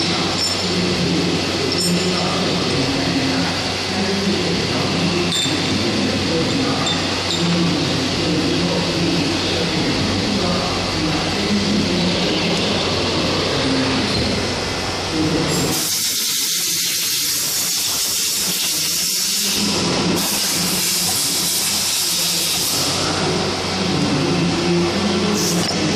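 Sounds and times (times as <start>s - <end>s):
machine noise: 0.0s - 25.9s
loud hiss: 20.2s - 23.0s.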